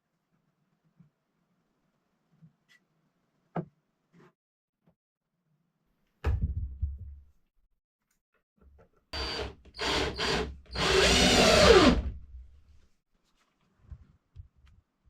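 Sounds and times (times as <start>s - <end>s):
power drill running: 9.2s - 12.2s.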